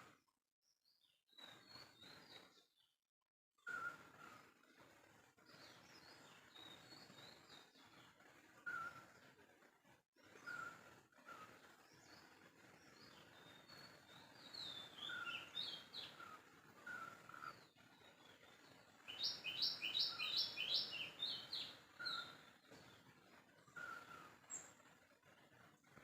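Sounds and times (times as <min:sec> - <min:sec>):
outdoor ambience: 0:03.6 - 0:26.0
birds chirping and calling: 0:10.3 - 0:24.8.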